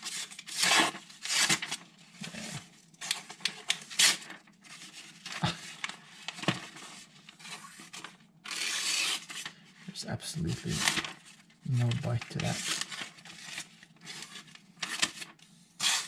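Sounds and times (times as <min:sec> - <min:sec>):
paper rustling and crinkling: 0:00.0 - 0:16.0.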